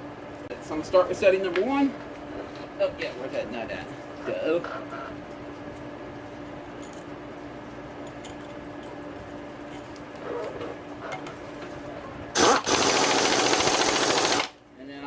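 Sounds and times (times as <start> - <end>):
impact wrench rattling: 12.4 - 14.5.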